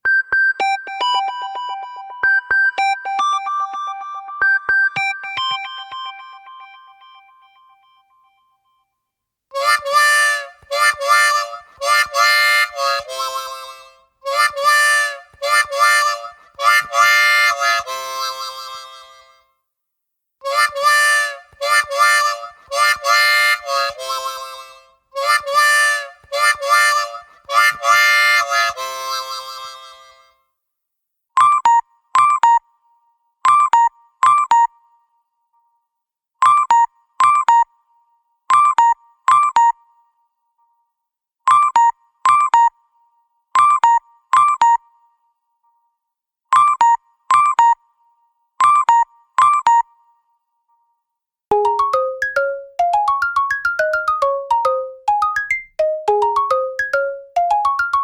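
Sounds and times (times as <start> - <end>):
electronic ringtone beeps: 0.1 - 7.9, 51.5 - 58.0
melodic phone ringtone: 0.5 - 7.9, 51.5 - 58.0.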